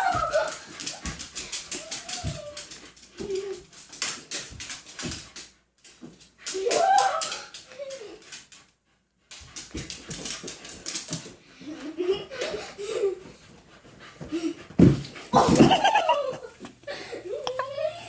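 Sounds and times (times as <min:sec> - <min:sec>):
dog whimpering and whining: 0:01.7 - 0:03.6.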